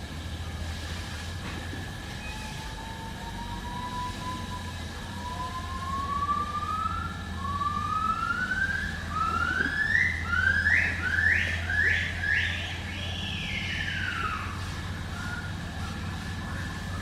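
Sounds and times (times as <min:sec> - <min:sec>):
steady low hum: 0:00.0 - 0:17.0
gibbon whooping call: 0:07.4 - 0:16.0.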